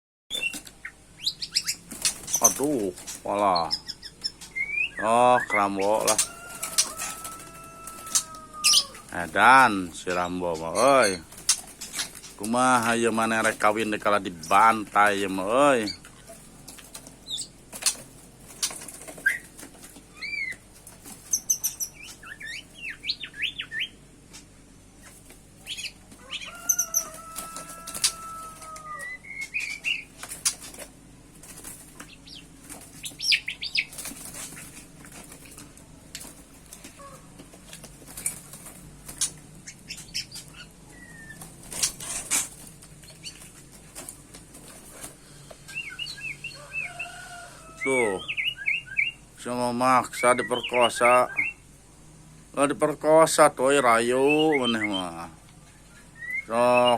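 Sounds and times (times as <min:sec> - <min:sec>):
birds chirping and warbling: 0:00.3 - 0:56.9
small birds flapping wings: 0:01.6 - 0:03.3, 0:05.8 - 0:10.1, 0:11.1 - 0:22.4, 0:25.0 - 0:29.0, 0:29.6 - 0:40.6, 0:41.3 - 0:45.6.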